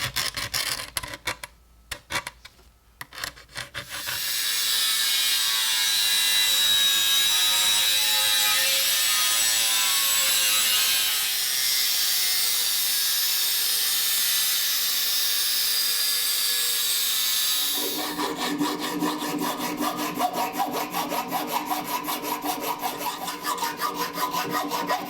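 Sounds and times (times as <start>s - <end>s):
power sanding tool grinding: 17.5s - 25.0s.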